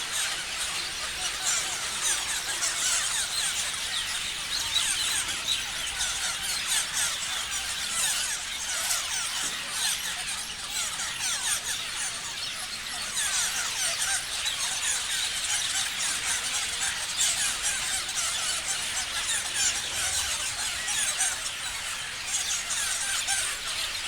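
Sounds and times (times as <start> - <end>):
parrots chirping and screeching: 0.0 - 24.0.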